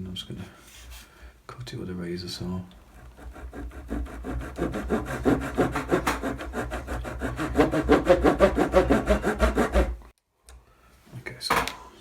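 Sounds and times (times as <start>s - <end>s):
saw cutting wood: 2.8s - 10.1s.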